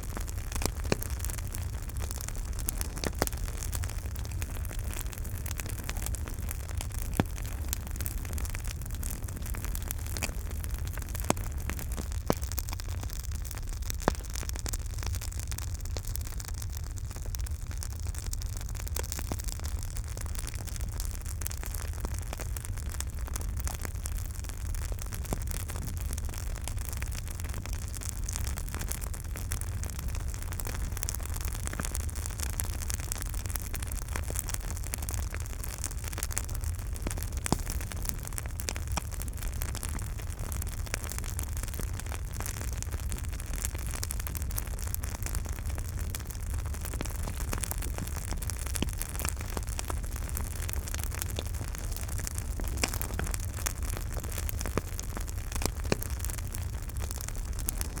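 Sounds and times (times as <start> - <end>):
campfire crackling and popping: 0.0 - 58.0.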